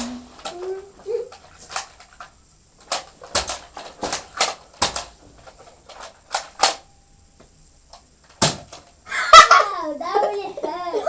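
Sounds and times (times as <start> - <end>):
toy blaster plastic clicks: 5.9 - 6.8.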